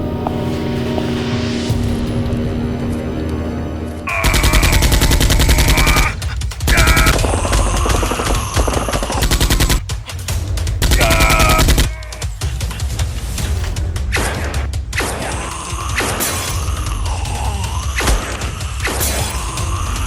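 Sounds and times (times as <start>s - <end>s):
background music: 0.0s - 20.0s
automatic gunfire: 4.2s - 6.1s, 6.7s - 9.8s, 10.8s - 11.9s.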